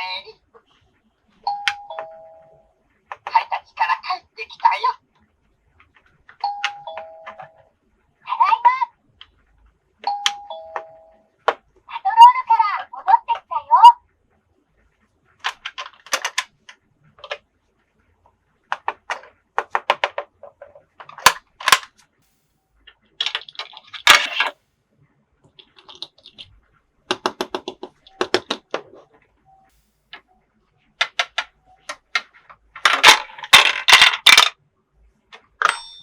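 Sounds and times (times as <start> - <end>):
plastic toy pieces clicking: 15.4 - 16.5, 18.7 - 21.9, 23.2 - 24.5, 25.6 - 26.5, 31.0 - 34.6.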